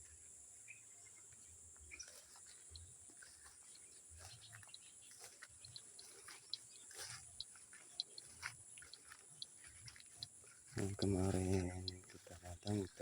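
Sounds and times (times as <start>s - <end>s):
insect chirps: 0.0s - 13.0s.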